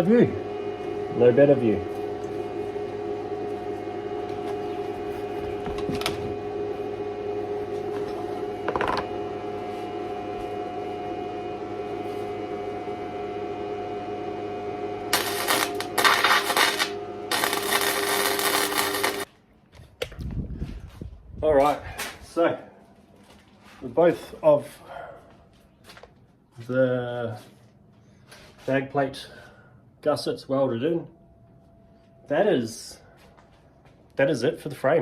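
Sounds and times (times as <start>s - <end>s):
electrical hum: 0.0s - 35.0s
welding arc crackle: 15.1s - 19.3s.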